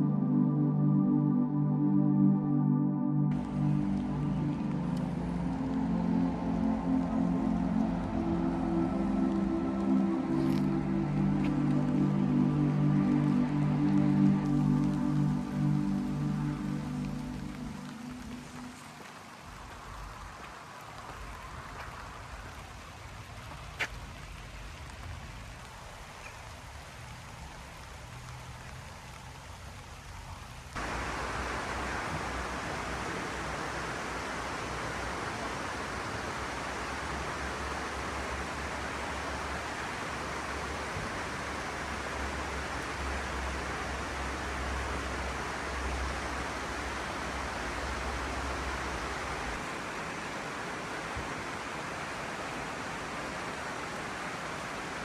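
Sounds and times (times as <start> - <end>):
steady rain: 0.0 - 55.0
rushing hiss: 30.8 - 55.0.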